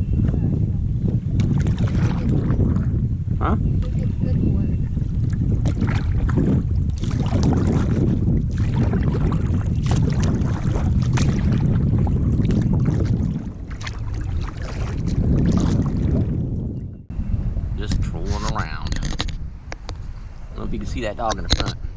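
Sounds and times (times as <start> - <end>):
wind buffeting microphone: 0.0 - 21.9
paddle splashes and drips: 1.4 - 2.9, 5.2 - 16.3.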